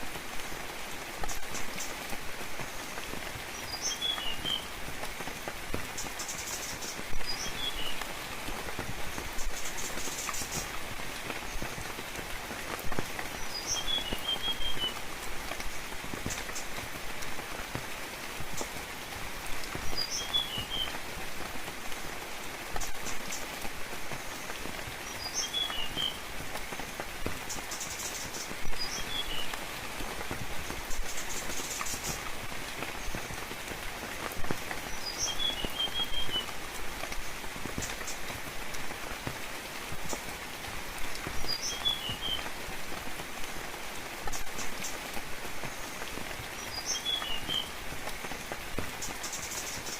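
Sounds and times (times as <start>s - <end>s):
gentle rain pattering: 0.0s - 49.9s
songbird chirping phrase: 13.4s - 15.0s, 46.6s - 47.7s.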